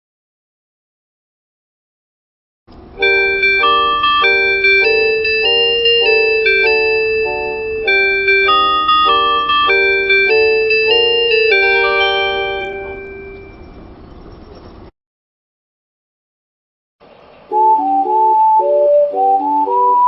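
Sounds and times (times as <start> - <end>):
electronic announcement chime melody: 3.0 - 14.5.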